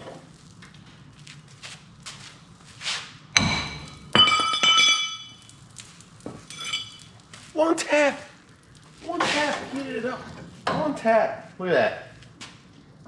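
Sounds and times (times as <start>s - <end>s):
hammer striking steel: 3.4s - 5.4s.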